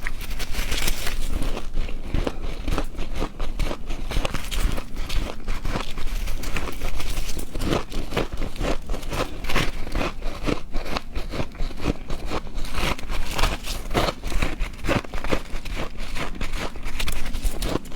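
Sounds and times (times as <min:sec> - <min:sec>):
ice being chewed: 0:00.0 - 0:17.9.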